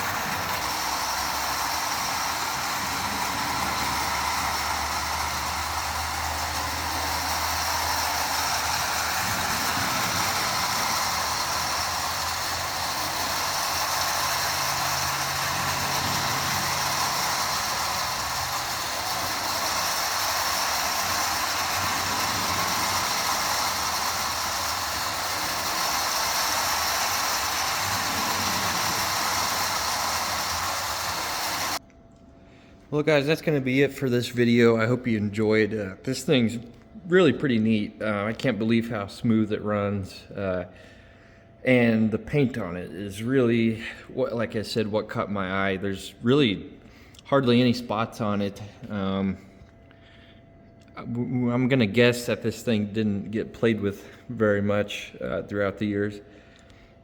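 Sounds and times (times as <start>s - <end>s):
toy train whirring and rattling: 0.0s - 31.8s.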